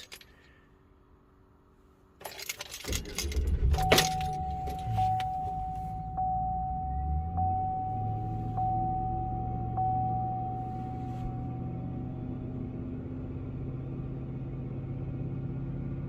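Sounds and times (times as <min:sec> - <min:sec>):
keys jangling: 0:00.0 - 0:00.4, 0:02.2 - 0:04.4
car engine starting and running: 0:01.2 - 0:16.0
dashboard warning chime: 0:03.1 - 0:12.6.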